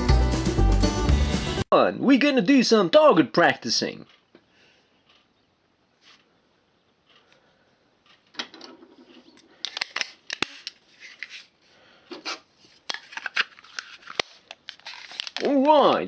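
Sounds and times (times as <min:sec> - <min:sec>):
parts scraping and rubbing: 0:08.1 - 0:15.5.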